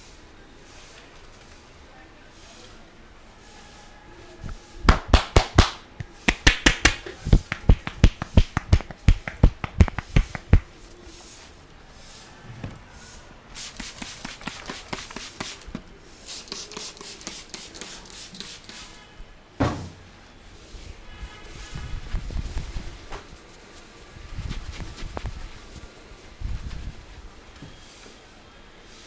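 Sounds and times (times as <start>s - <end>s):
rubbing strokes: 3.3s - 12.2s, 21.8s - 27.4s
hands patting a head: 4.3s - 11.0s, 13.6s - 15.8s.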